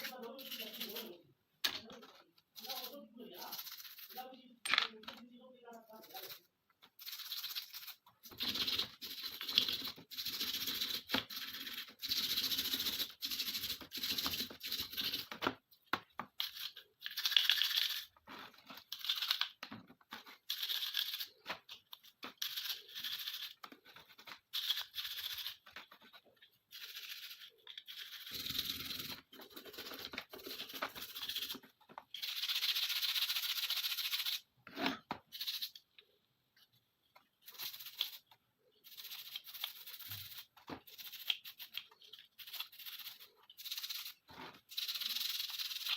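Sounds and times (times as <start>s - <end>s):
scratchy scrubbing on metal parts: 2.6s - 4.3s.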